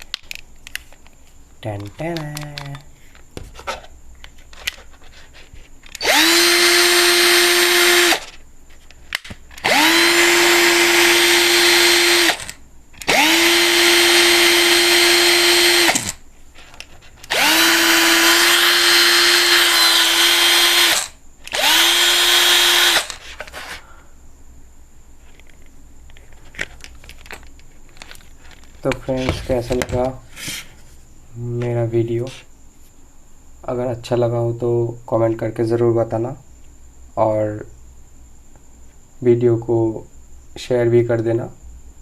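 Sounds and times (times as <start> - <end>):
cordless drill motor whining: 5.9 - 8.3, 9.6 - 16.2, 17.2 - 23.2.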